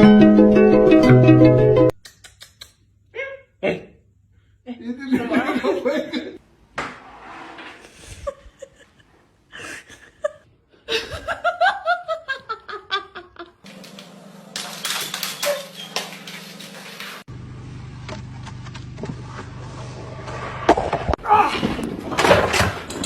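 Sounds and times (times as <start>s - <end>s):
person laughing: 5.0s - 6.4s, 7.9s - 13.6s.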